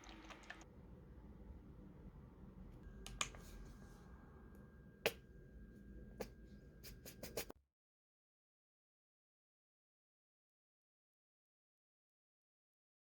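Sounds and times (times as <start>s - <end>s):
low steady hum: 0.0s - 7.5s.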